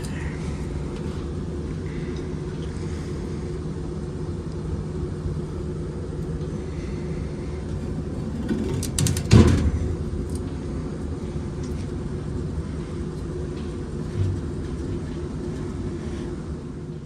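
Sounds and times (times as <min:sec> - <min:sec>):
fan unit humming: 0:00.0 - 0:17.0
heavy thump: 0:14.1 - 0:14.6.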